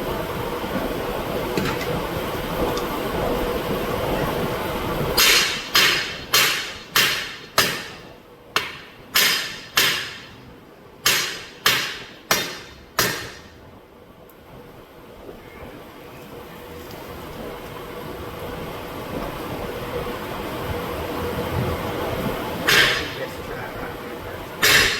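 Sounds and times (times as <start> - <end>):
hammer striking steel rim: 5.2 - 10.4, 11.0 - 13.5, 22.7 - 23.3, 24.6 - 24.9.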